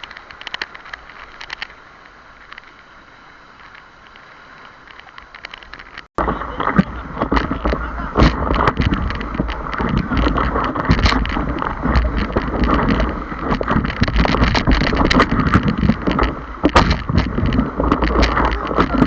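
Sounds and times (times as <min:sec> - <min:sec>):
rushing whitewater: 0:00.0 - 0:19.0
sharp knocks and splashes: 0:04.9 - 0:19.0
wind buffeting microphone: 0:06.1 - 0:19.0.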